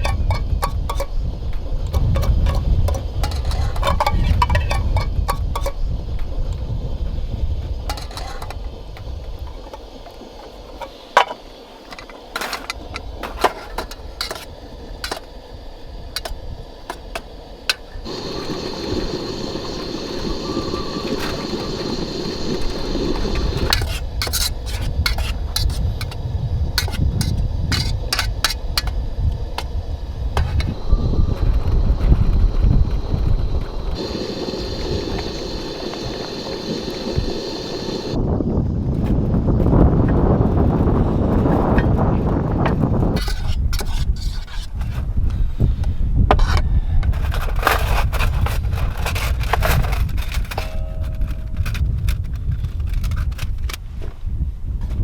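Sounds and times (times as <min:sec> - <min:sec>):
steady hiss with high whine: 0:00.0 - 0:46.3
wind rumbling on microphone: 0:00.0 - 0:55.0
small objects clicking and clattering: 0:07.9 - 0:09.8, 0:47.1 - 0:53.8.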